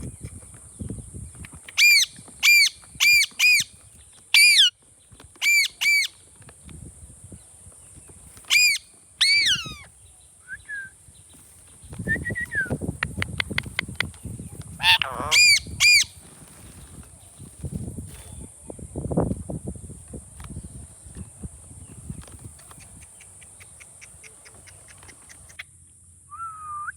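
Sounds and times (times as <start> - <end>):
parrot screeching: 4.4 - 4.7, 5.4 - 6.1, 8.5 - 9.9, 14.8 - 16.1.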